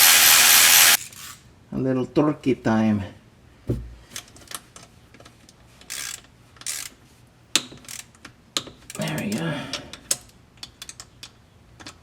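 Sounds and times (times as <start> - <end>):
low thump: 3.7 - 4.1
tools clicking and knocking: 5.9 - 12.0.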